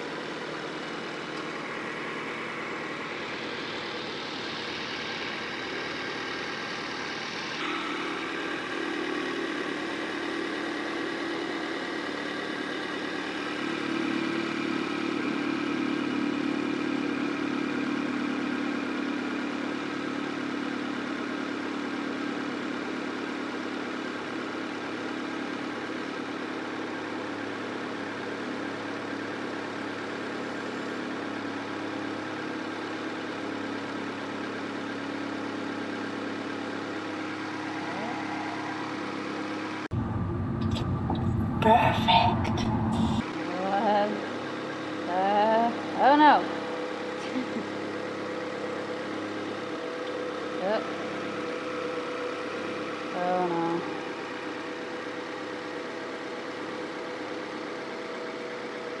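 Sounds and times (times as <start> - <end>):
car engine idling: 0.0 - 15.4, 29.5 - 31.1, 39.9 - 43.2.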